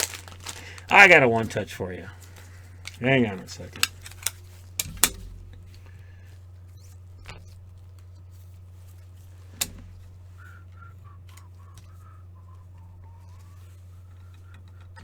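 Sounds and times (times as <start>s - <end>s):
steady low hum: 0.0s - 15.0s
card holder clicks and taps: 3.8s - 6.0s.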